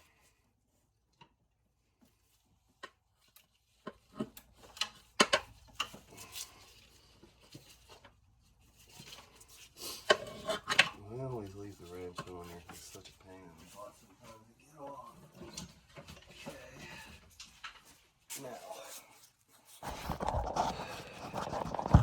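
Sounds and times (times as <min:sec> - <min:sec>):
hard objects clicking and knocking: 0:19.8 - 0:22.0.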